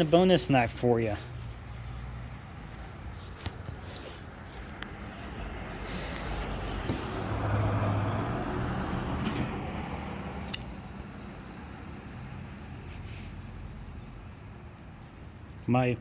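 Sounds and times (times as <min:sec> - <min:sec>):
vehicle passing by: 0:01.1 - 0:15.6
sharp click: 0:10.4 - 0:10.8.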